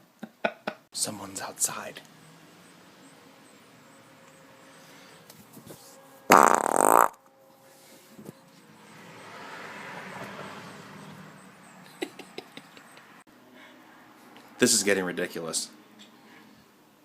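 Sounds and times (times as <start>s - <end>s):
buzzing human fart: 6.3s - 7.2s.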